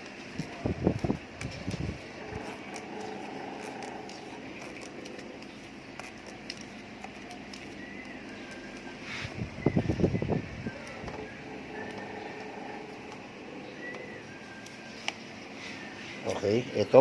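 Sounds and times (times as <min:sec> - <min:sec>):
steady background hum: 0:00.0 - 0:17.0.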